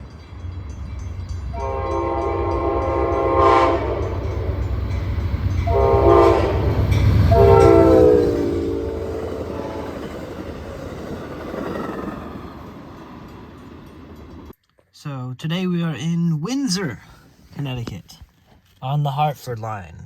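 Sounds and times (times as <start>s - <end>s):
train rumble: 0.0s - 14.6s
train air horn blasts: 1.5s - 5.0s, 5.6s - 10.0s.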